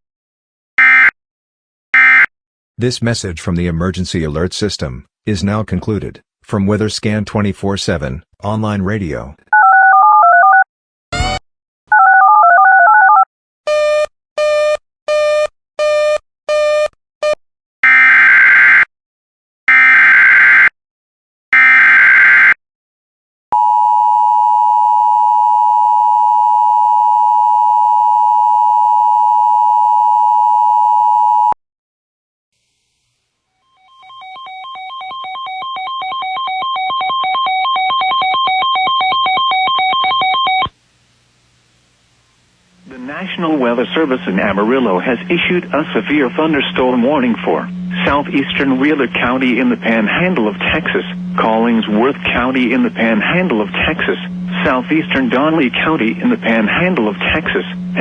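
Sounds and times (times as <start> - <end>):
two-note attention tone: 11.1 - 11.4
rapidly pulsing electronic tone: 42.8 - 58.0.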